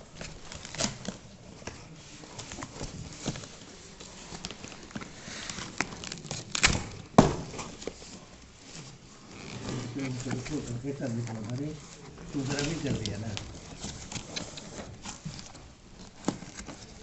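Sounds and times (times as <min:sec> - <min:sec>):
small clicks and rustles: 0:00.0 - 0:17.0.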